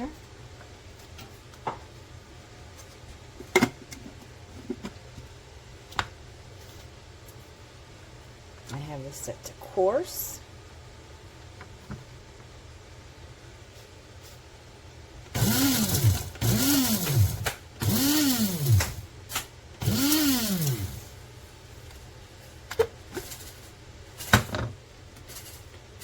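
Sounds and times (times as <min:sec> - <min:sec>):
electric coffee grinder: 0:15.4 - 0:21.2.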